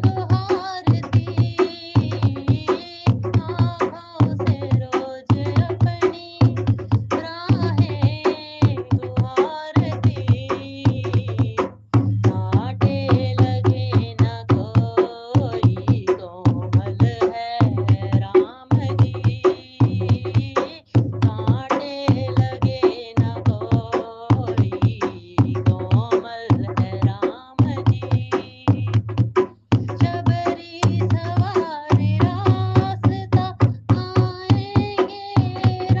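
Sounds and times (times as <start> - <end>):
drum strikes: 0.0 - 36.0
person singing devotional song: 0.0 - 36.0
quick percussion rhythm: 0.0 - 36.0
deep bass: 12.0 - 14.0.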